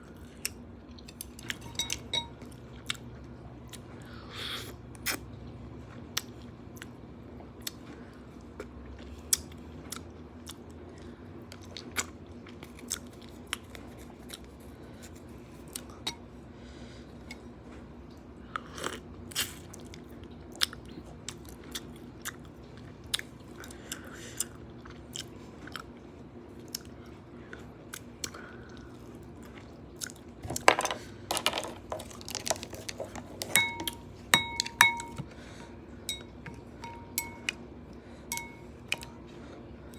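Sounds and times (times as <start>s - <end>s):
chewing crunchy food: 5.0s - 16.0s, 18.1s - 30.4s, 31.9s - 33.6s.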